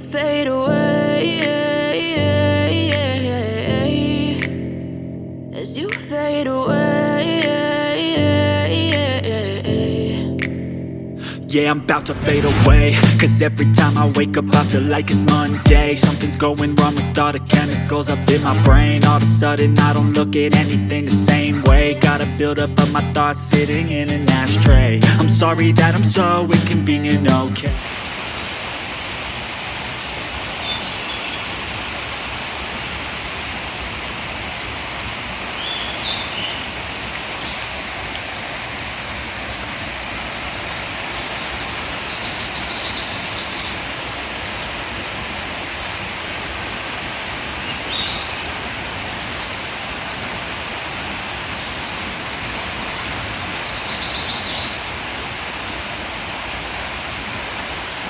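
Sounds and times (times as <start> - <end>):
mountain stream rushing: 11.5 - 58.0
bird chirping and calling: 39.6 - 43.8, 52.4 - 54.8.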